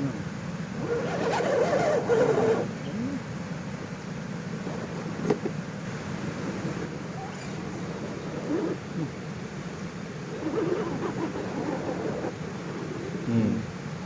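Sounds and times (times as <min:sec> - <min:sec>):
toy car electric motor humming: 0:00.8 - 0:02.7.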